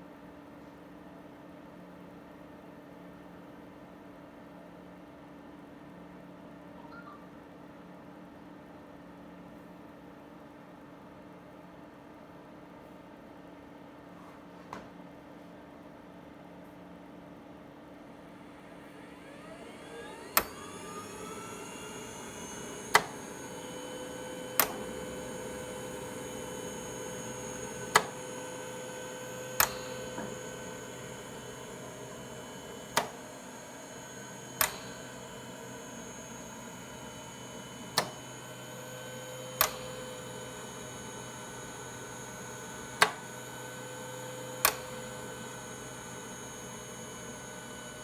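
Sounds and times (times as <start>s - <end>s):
ventilator motor whine: 18.1s - 48.0s
sharp clicks: 20.1s - 48.0s.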